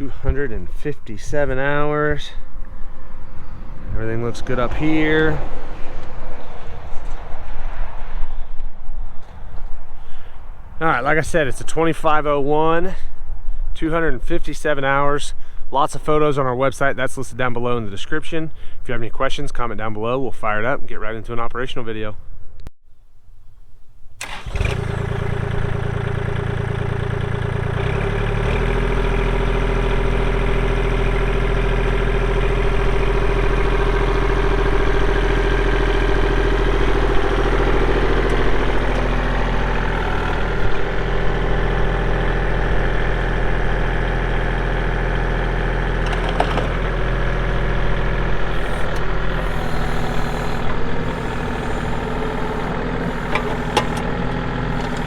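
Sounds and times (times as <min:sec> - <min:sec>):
tractor diesel engine starting: 0:00.0 - 0:07.1, 0:24.2 - 0:55.0.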